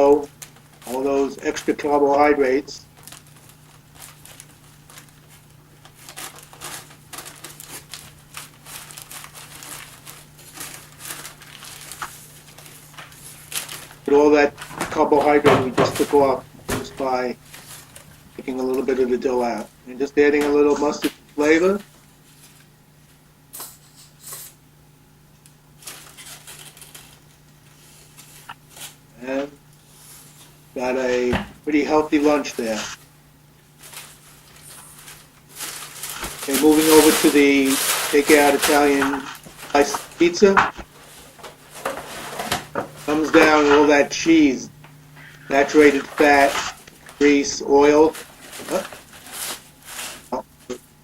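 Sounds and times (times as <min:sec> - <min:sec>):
steady low hum: 0:00.0 - 0:51.0
bread crinkling and tearing: 0:02.9 - 0:14.7, 0:25.8 - 0:29.0, 0:33.7 - 0:43.3, 0:48.0 - 0:50.4.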